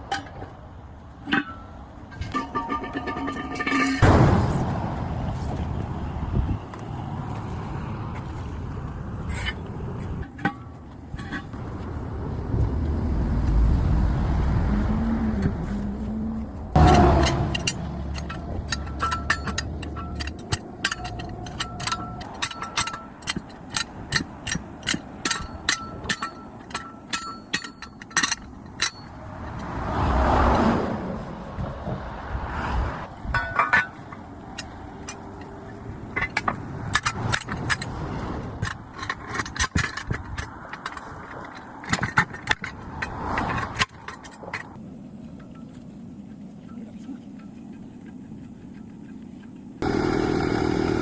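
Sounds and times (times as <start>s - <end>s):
metal tools clinking: 1.2s - 4.0s, 16.8s - 29.7s, 33.3s - 38.0s, 38.6s - 44.8s
vehicle passing: 4.0s - 10.2s, 11.6s - 21.6s, 29.1s - 33.2s, 34.4s - 39.3s, 42.7s - 43.9s.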